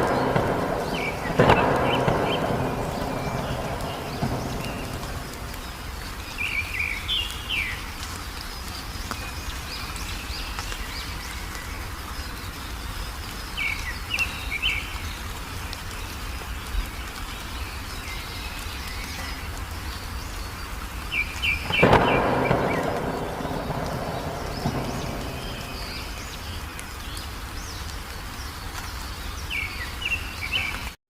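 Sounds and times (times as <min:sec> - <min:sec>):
outdoor background hiss: 0:00.0 - 0:31.0
songbirds chirping: 0:00.0 - 0:31.0.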